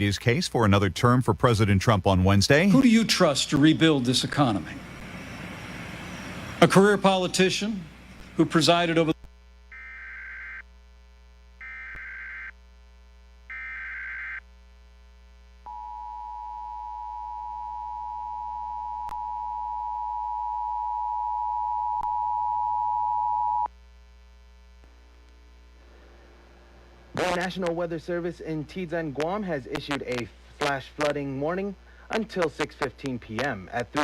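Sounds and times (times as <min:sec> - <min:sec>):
steady attention tone: 0:02.7 - 0:09.2, 0:15.7 - 0:23.7.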